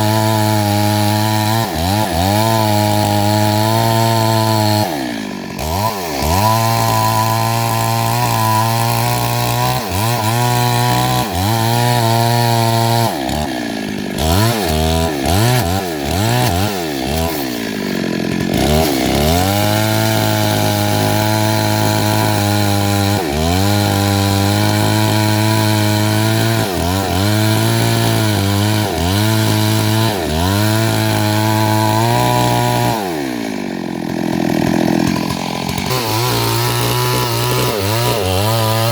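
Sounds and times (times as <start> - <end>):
chainsaw running at high revs: 0.0 - 38.9.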